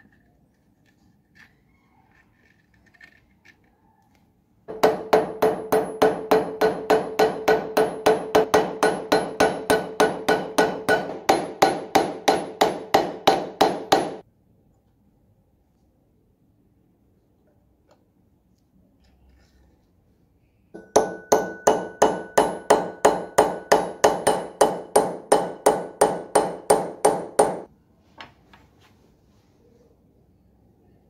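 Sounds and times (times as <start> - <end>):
small hammer striking metal: 4.7 - 14.2, 20.8 - 27.7.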